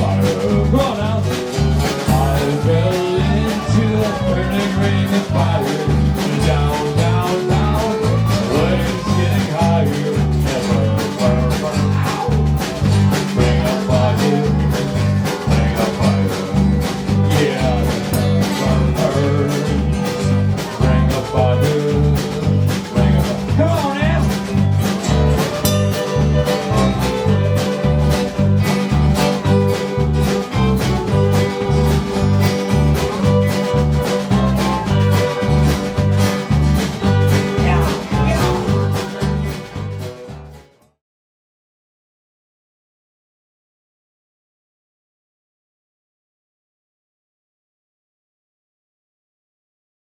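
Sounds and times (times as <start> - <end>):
person singing: 0.0 - 40.0
live bluegrass band music: 0.0 - 40.8.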